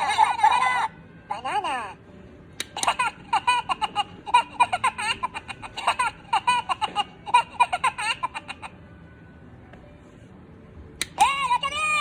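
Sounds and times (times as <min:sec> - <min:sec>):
high-pitched giggling laugh: 0:00.0 - 0:01.6, 0:02.7 - 0:08.8.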